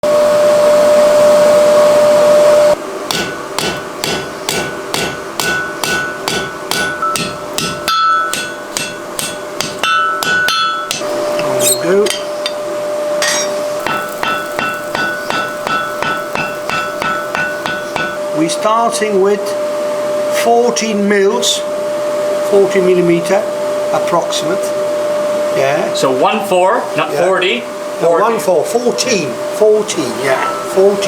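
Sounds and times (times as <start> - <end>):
steady hum: 0.0 - 31.0
hammer striking steel on anvil: 3.1 - 12.6, 13.2 - 18.2, 30.4 - 30.8.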